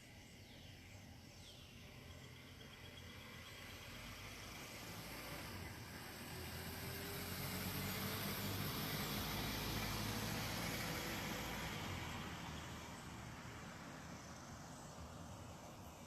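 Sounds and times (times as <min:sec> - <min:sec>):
motor vehicle passing by: 0:01.9 - 0:16.0.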